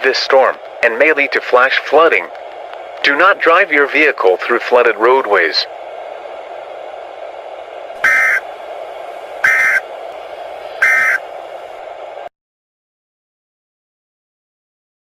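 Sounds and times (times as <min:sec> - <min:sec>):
steady static hum: 0:00.0 - 0:12.3
screeching data tone bursts: 0:08.0 - 0:08.4, 0:09.4 - 0:09.8, 0:10.8 - 0:11.2.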